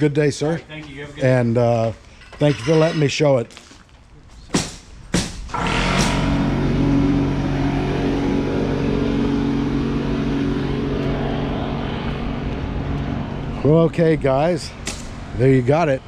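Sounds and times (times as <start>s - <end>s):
sharp knocks: 4.5s - 6.5s
car engine running: 5.6s - 15.6s.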